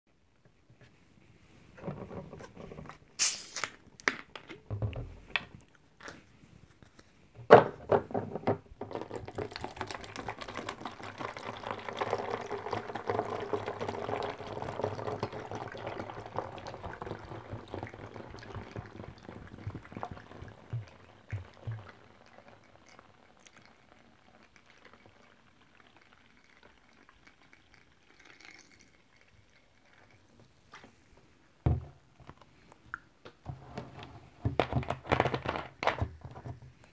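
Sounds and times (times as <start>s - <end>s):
fizzy soda being poured: 3.2s - 3.9s, 8.9s - 30.3s.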